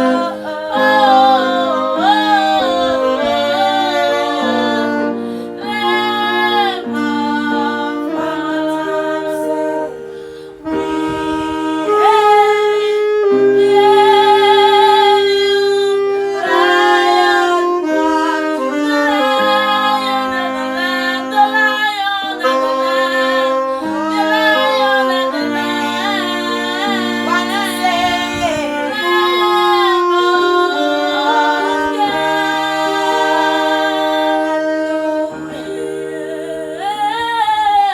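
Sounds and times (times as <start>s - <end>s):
instrumental backing chords: 0.0s - 37.9s
person singing worship song: 0.0s - 37.9s.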